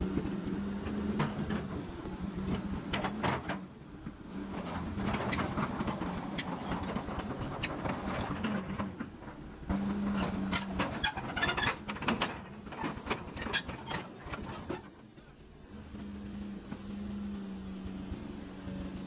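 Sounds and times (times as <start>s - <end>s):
diesel engine hum: 15.2s - 19.0s.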